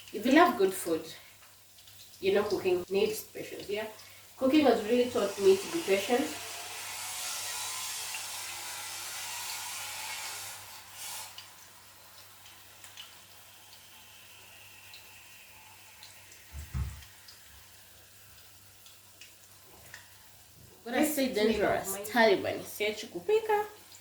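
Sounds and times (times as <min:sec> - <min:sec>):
sausages sizzling in oil: 0:00.0 - 0:24.0
low thump: 0:16.6 - 0:17.0.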